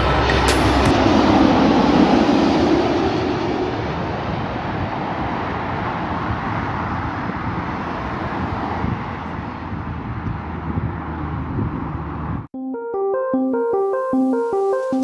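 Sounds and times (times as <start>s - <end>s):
jet airliner noise: 0.0s - 8.7s.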